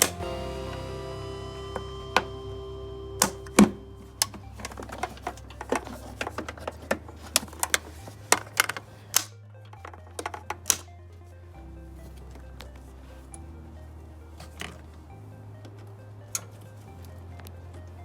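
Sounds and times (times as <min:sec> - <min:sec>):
background music: 0:00.0 - 0:18.0
plastic clips clicking: 0:04.2 - 0:10.9.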